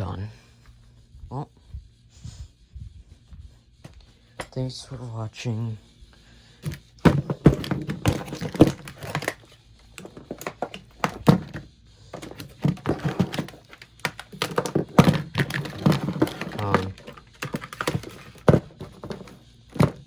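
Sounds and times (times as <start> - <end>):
objects knocking and rattling: 6.6 - 20.0.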